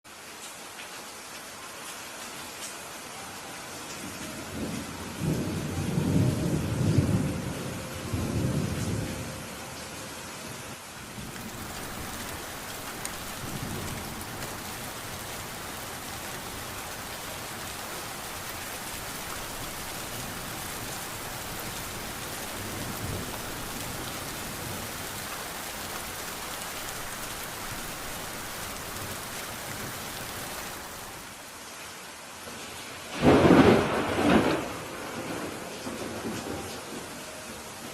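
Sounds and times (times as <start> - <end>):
steady rain: 0.0 - 37.9
rumble of thunder: 4.1 - 9.6, 11.0 - 16.4, 19.5 - 25.1, 33.1 - 37.2
sharp thunderclap: 33.2 - 36.7.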